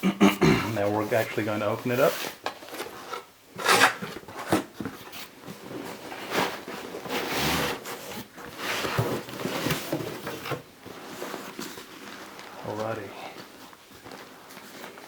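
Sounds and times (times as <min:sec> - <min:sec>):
cardboard ripping and rustling: 0:02.2 - 0:13.0.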